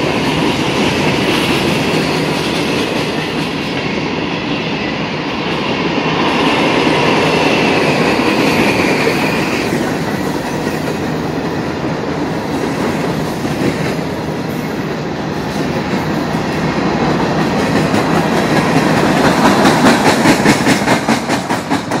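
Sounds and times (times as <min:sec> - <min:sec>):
freight train wheels rumbling on rail: 0:00.0 - 0:22.0
wheels clacking over rail joints: 0:07.9 - 0:22.0.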